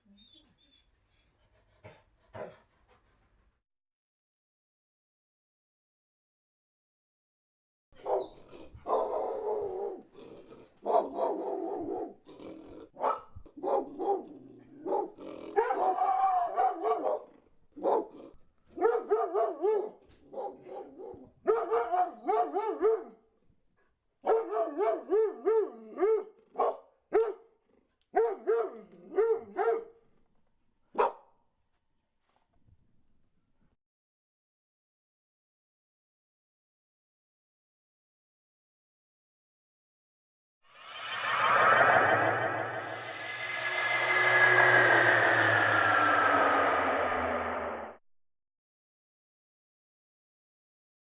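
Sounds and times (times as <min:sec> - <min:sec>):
dog barking: 0:02.4 - 0:02.6, 0:08.0 - 0:10.1, 0:10.8 - 0:12.2, 0:13.0 - 0:23.2, 0:24.2 - 0:27.5, 0:28.1 - 0:30.0, 0:30.9 - 0:31.3.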